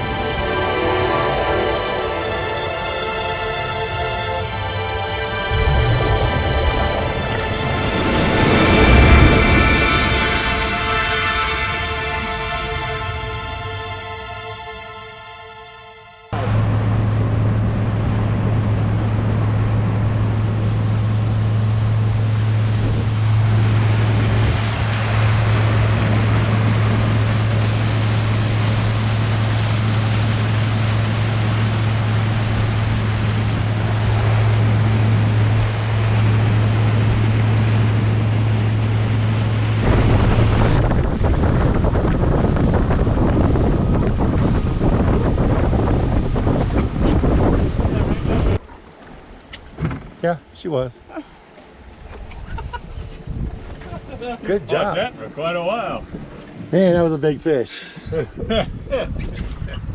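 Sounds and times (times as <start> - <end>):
water noise: 0.0 - 15.1, 16.3 - 59.0
wind on microphone: 5.2 - 13.6, 16.4 - 50.1, 51.8 - 54.6, 58.0 - 59.9
outboard motor running: 16.4 - 40.8.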